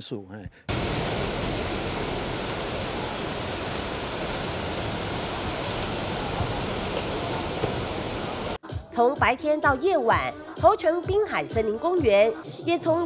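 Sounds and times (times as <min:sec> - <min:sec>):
sea surf rushing: 0:00.7 - 0:08.6.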